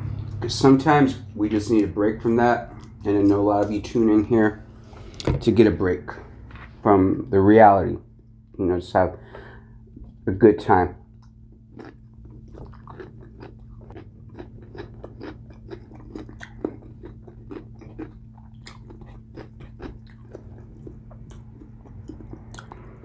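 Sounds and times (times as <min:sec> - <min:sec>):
chewing and crunching food: 0:00.0 - 0:05.2, 0:11.0 - 0:23.0
steady low hum: 0:00.0 - 0:23.0.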